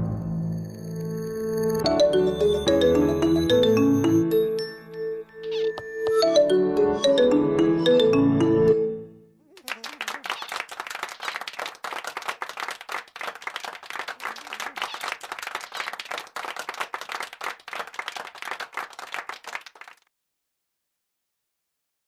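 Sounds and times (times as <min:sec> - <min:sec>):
hands clapping applause: 0:09.5 - 0:20.1.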